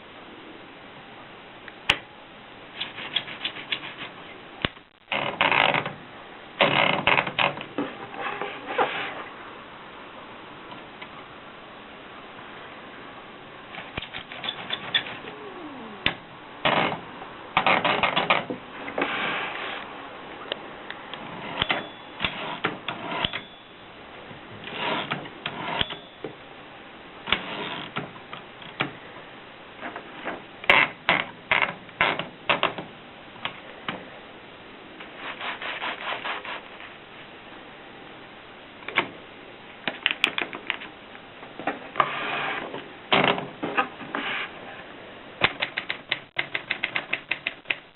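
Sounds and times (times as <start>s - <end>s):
mechanical scraping noises: 6.6s - 9.3s, 13.8s - 15.3s, 24.6s - 26.0s, 35.1s - 37.0s, 42.0s - 42.8s, 44.0s - 44.7s
typewriter clacking: 45.4s - 47.9s.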